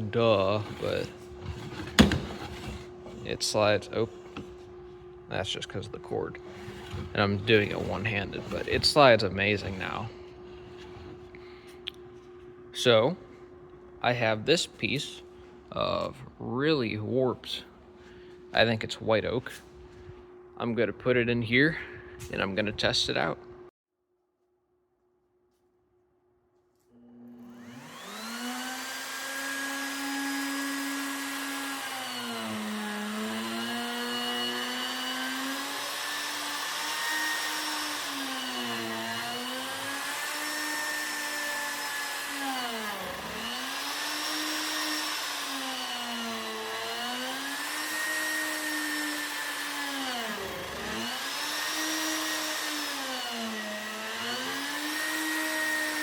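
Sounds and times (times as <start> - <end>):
router motor whining: 27.0 - 56.0.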